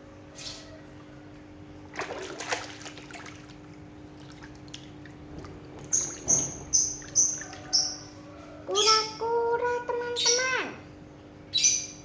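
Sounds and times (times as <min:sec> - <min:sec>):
water splashing: 0:01.9 - 0:07.8.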